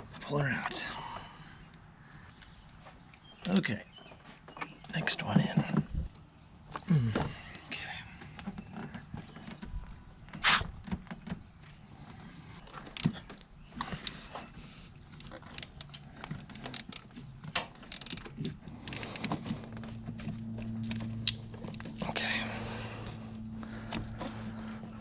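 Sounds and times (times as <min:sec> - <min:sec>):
socket wrench clicking: 0:13.0 - 0:13.2, 0:15.5 - 0:16.0, 0:16.7 - 0:17.1, 0:17.9 - 0:19.4.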